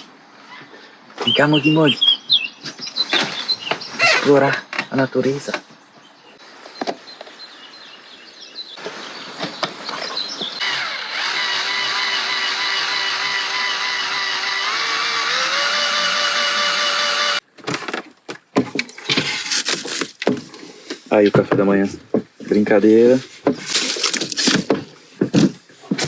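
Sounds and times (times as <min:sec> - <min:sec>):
small electric motor whining: 0:10.6 - 0:17.4.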